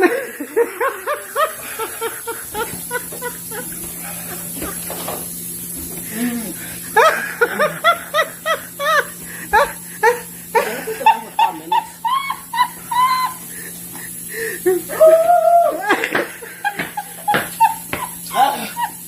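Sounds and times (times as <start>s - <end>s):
person laughing hard: 0.0s - 4.9s, 6.2s - 19.0s
long drawn-out voiced cry: 14.7s - 16.0s.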